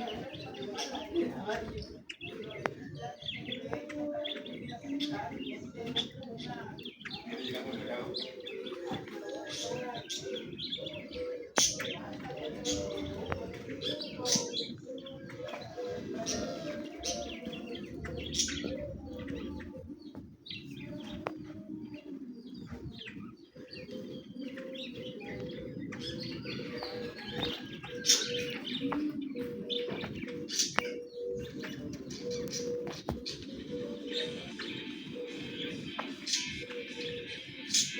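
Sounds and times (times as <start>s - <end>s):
small birds chirping: 0.0s - 37.9s.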